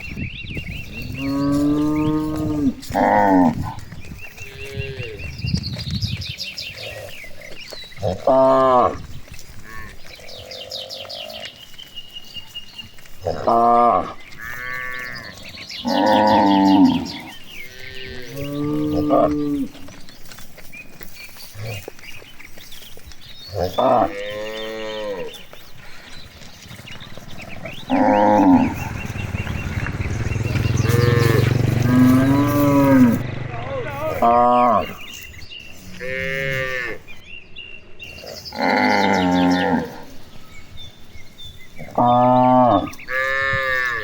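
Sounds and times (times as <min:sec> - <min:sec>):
cattle mooing: 0:00.9 - 0:03.8, 0:04.4 - 0:05.4, 0:08.0 - 0:09.0, 0:13.2 - 0:20.0, 0:23.5 - 0:25.4, 0:27.1 - 0:35.2, 0:35.8 - 0:37.2, 0:38.5 - 0:40.1, 0:41.8 - 0:44.0.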